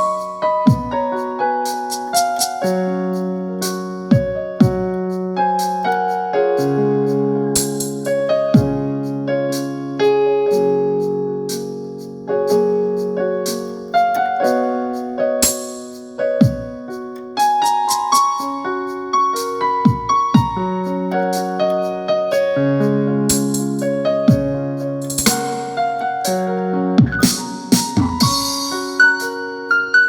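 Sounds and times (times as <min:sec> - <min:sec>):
piano keyboard melody over chords: 0:00.0 - 0:30.0.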